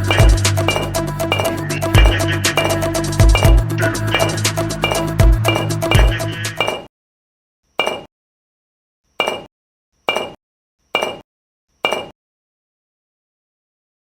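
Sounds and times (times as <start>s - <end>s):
clinking hits: 0.0s - 2.8s, 4.1s - 6.8s, 9.2s - 9.5s, 10.1s - 10.4s, 11.0s - 11.2s, 11.9s - 12.1s
background music: 0.0s - 6.7s.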